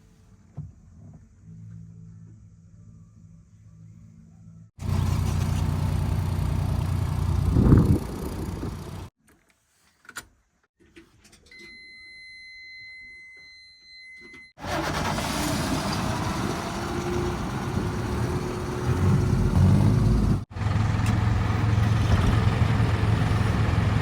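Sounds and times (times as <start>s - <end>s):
diesel engine running loud: 4.8s - 9.1s, 14.6s - 24.0s.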